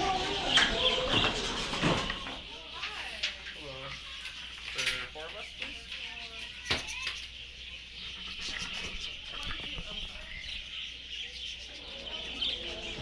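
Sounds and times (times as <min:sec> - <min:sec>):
flock of small birds chirping: 0:00.0 - 0:13.0.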